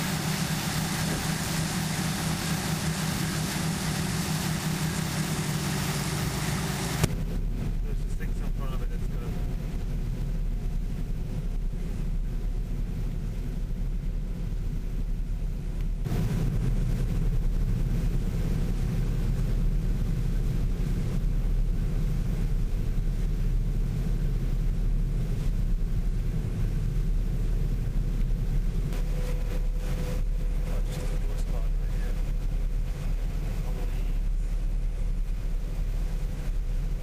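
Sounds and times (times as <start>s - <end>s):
combine harvester drone: 0.0s - 13.9s, 15.9s - 37.0s.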